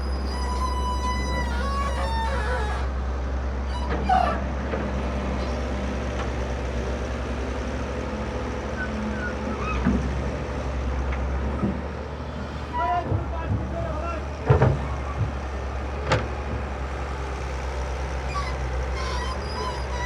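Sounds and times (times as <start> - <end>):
heavy diesel engine droning: 0.0 - 20.0
short animal-like cries: 18.3 - 20.0.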